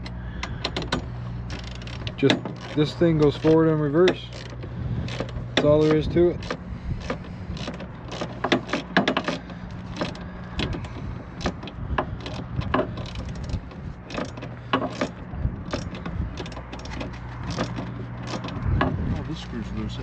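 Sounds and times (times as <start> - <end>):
hand tools clicking and knocking: 0.0 - 19.0
steady low hum: 0.0 - 20.0.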